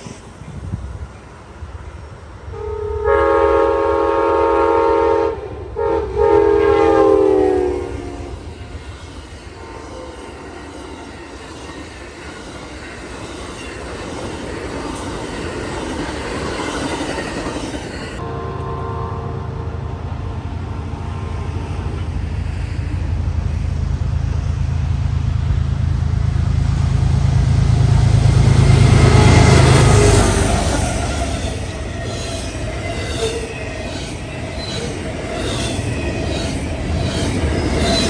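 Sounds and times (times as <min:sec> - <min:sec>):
train rumbling and rattling by: 0:00.0 - 0:38.0
locomotive horn blasts: 0:02.5 - 0:08.4, 0:18.2 - 0:20.1.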